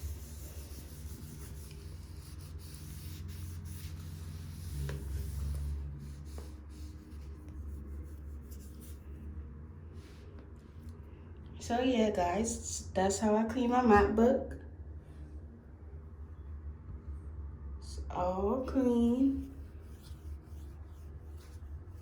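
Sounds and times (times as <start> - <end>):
wipe scrubbing a keyboard: 0.0 - 9.2, 19.4 - 22.0.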